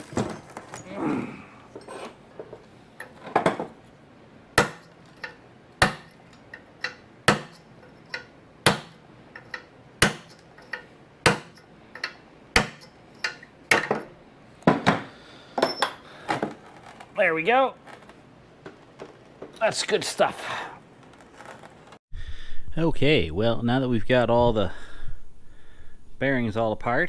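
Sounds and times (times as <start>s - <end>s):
hammer striking metal punch: 4.6s - 6.2s, 6.8s - 10.4s, 11.2s - 14.1s.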